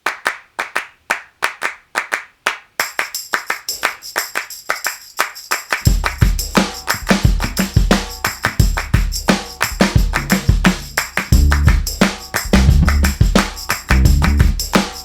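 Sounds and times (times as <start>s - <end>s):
hand claps: 0.0s - 15.0s
tambourine-like high percussion: 2.8s - 15.0s
deep kick drum: 5.9s - 15.0s.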